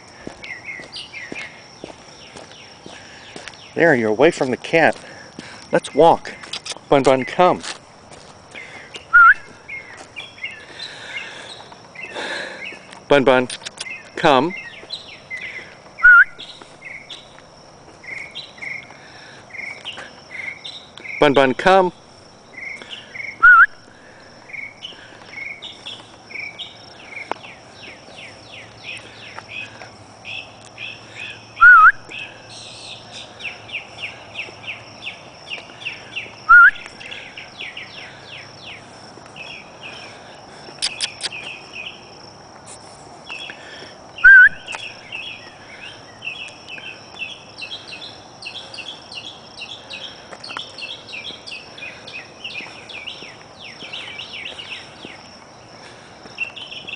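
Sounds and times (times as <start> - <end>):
insect trill: 0.0 - 56.9
songbirds chirping: 0.0 - 56.9
loud whistled note: 44.2 - 44.6.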